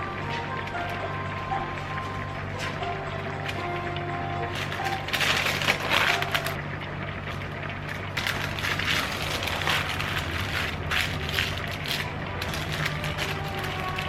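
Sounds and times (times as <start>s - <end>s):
food crunching and crackling: 3.4s - 14.0s.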